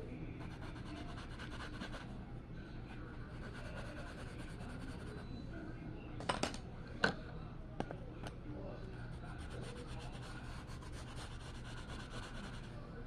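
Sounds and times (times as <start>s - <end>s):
drawing tool scratching paper: 9.3s - 12.7s.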